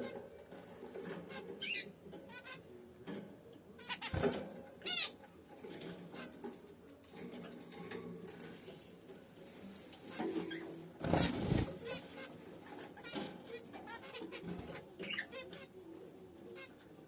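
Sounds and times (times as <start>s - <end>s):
zebra finches chirping: 1.3s - 2.6s, 13.0s - 15.8s.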